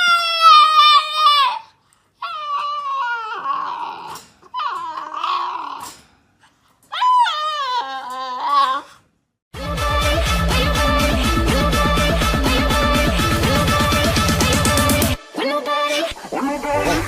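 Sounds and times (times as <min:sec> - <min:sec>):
dog howling whines: 0:00.0 - 0:06.0, 0:06.9 - 0:08.9.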